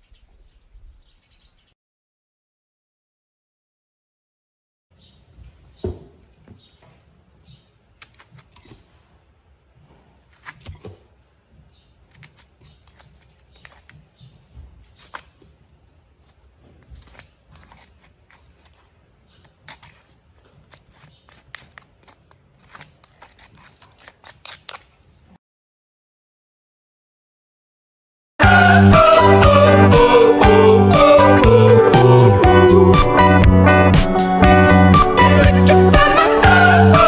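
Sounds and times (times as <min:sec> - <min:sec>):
grooming tools scraping: 0:06.6 - 0:09.0, 0:12.0 - 0:25.0, 0:28.4 - 0:29.8, 0:32.5 - 0:37.0.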